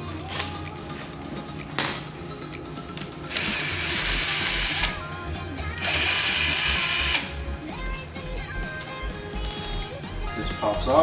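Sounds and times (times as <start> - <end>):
background music: 0.0 - 11.0
cordless power tool spinning: 3.3 - 5.0, 5.8 - 7.3.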